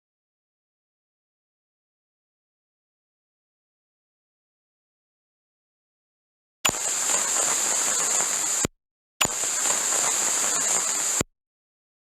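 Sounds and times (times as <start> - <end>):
loud hissing static: 6.7 - 11.2
steady high whine: 6.7 - 11.3.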